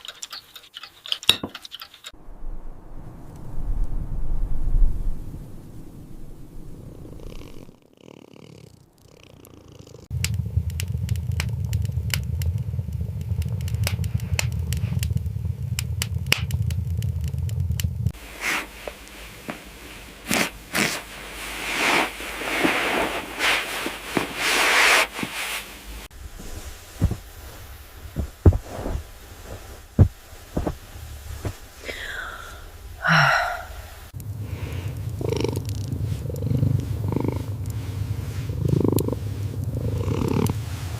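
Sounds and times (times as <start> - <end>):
crackling and clicking: 0.0 - 2.2, 6.6 - 25.1, 34.0 - 40.6
kitten purring: 6.6 - 40.9.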